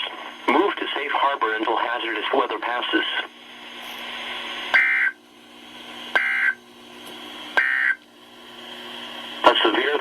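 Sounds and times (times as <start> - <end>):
radio hiss: 0.0 - 5.1, 9.3 - 10.0
buzzy two-tone data chirps: 4.7 - 5.2, 6.2 - 6.6, 7.6 - 8.0.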